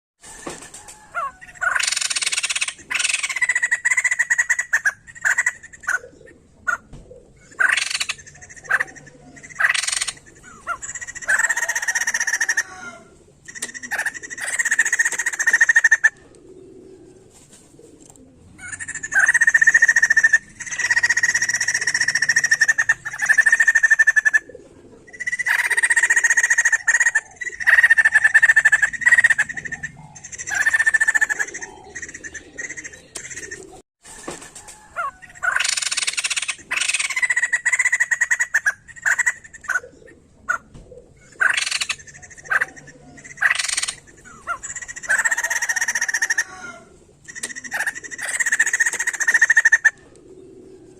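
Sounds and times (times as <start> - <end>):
laughingthrush harsh chattering: 13.5 - 16.2, 18.6 - 24.4, 47.2 - 50.0.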